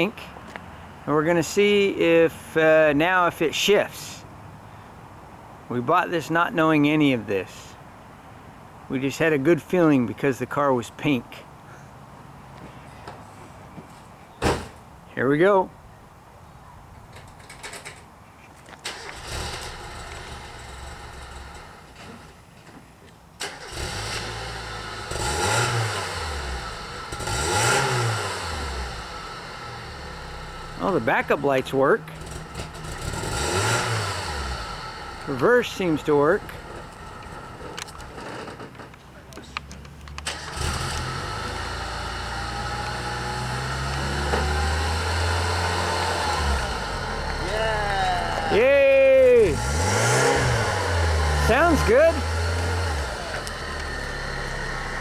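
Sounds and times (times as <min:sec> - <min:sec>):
car engine starting and revving: 0:18.8 - 0:22.2, 0:23.4 - 0:38.6, 0:40.1 - 0:55.0.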